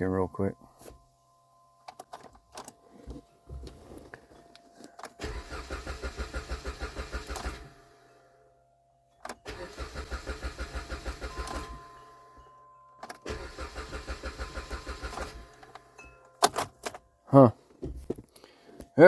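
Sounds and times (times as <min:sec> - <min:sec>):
engine cranking on starter: 0:05.1 - 0:08.0, 0:09.2 - 0:11.9, 0:13.1 - 0:15.8.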